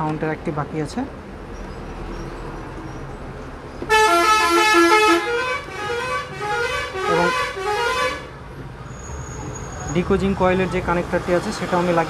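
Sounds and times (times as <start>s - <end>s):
multi-tone vehicle horn: 3.9s - 8.4s.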